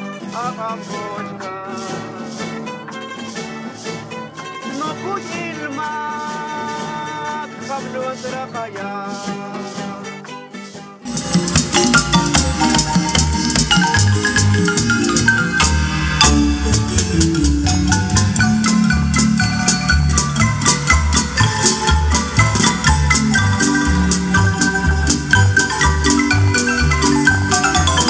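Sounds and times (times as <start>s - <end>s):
marimba music: 11.0s - 28.0s
rattling percussion: 11.0s - 28.0s
rhythmic bass line: 11.0s - 28.0s.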